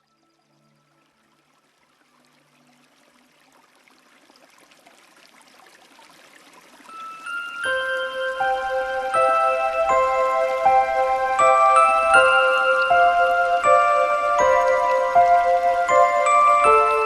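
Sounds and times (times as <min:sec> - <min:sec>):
brook trickling and babbling: 0:00.0 - 0:17.0
chiming bell-like music: 0:06.9 - 0:17.0.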